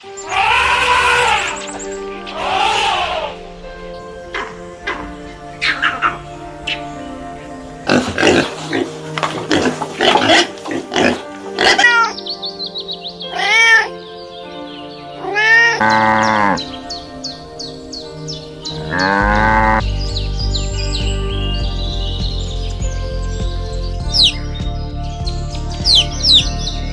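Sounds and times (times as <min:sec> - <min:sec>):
animal calls: 0:00.0 - 0:03.5, 0:07.8 - 0:14.1, 0:15.1 - 0:19.8
background music: 0:00.0 - 0:26.9.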